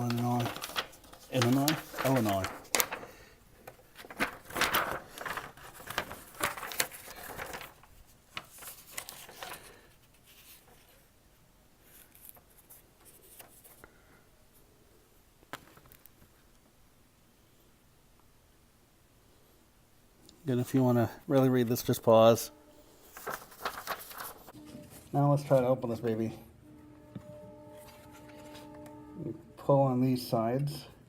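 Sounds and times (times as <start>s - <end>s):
paper rustling and crinkling: 0.0s - 11.1s, 11.8s - 13.9s, 21.3s - 26.3s, 27.3s - 29.1s.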